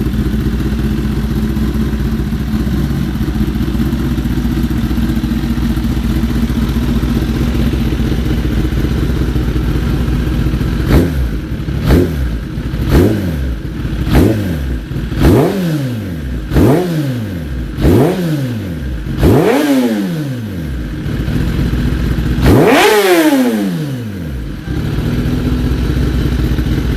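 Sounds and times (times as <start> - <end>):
motorcycle throttle blips: 0.0 - 17.0
motorcycle engine idling: 0.0 - 26.9
motorcycle engine revving high: 0.0 - 26.9.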